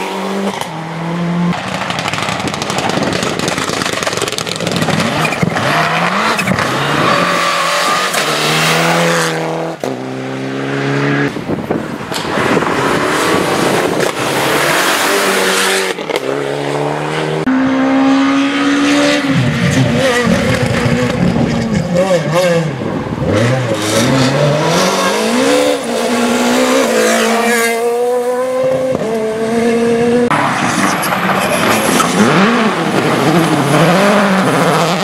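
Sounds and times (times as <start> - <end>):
rally car engine at full throttle: 0.0 - 35.0
rushing noise of passing car: 0.0 - 35.0.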